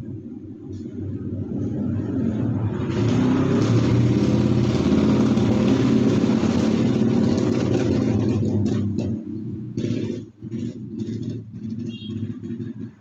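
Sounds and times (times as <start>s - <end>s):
vehicle engine running loudly: 0.0s - 13.0s.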